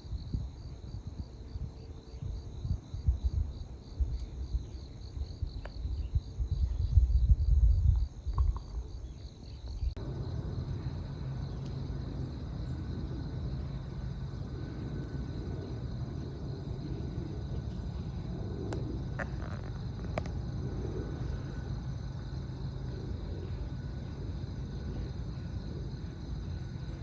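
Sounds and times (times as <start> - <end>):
wind buffeting microphone: 0.0 - 9.1
insects chirping in a trill: 0.0 - 27.0.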